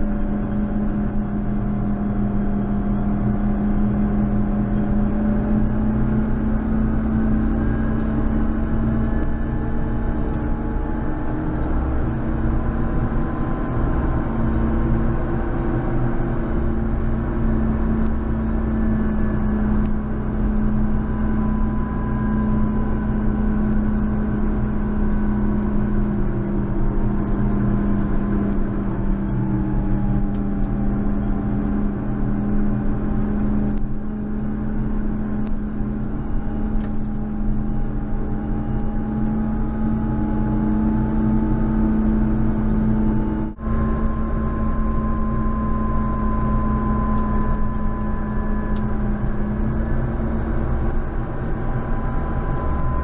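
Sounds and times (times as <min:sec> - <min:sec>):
tractor engine droning: 0:00.0 - 0:53.0.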